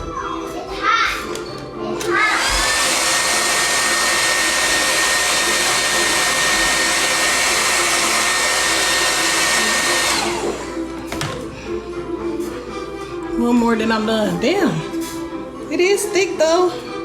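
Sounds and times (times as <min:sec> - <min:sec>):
hair dryer blowing: 0:02.0 - 0:11.2.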